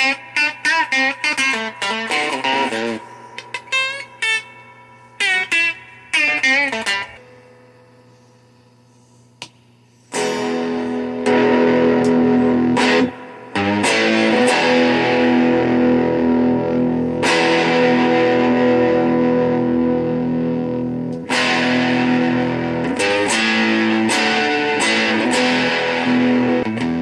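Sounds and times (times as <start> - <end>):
distorted electric guitar chords: 0.0 - 7.3, 10.1 - 27.0.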